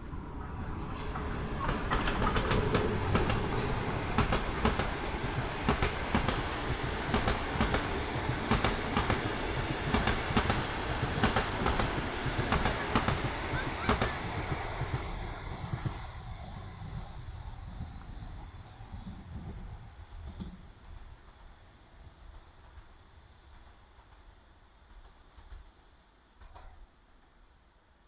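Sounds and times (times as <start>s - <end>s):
train rumbling past: 0.0s - 28.0s
wheels clicking over rail joints: 1.1s - 9.3s.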